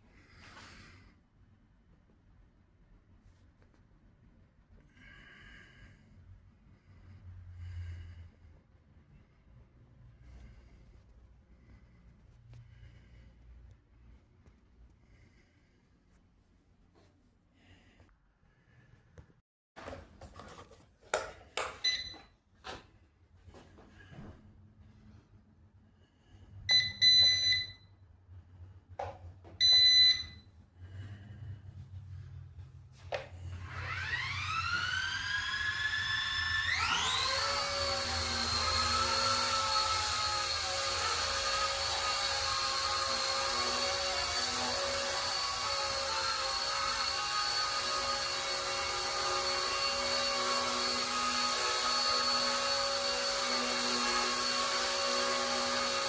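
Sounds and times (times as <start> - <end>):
toy helicopter motor whine: 33.5 - 56.0.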